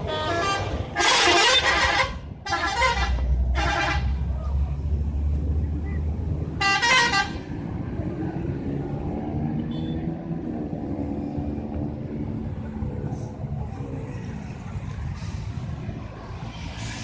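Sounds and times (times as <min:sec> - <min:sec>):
musical bus horn: 0:00.0 - 0:04.2, 0:06.6 - 0:07.5
bus engine running: 0:00.0 - 0:17.0.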